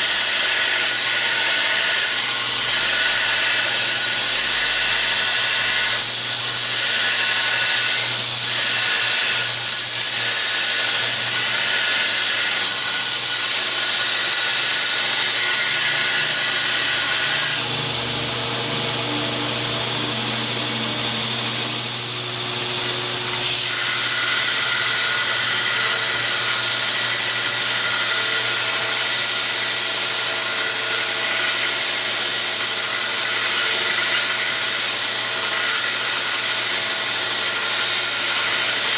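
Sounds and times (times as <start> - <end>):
motor humming: 12.8 - 27.6
abrasive belt hissing: 14.4 - 22.3.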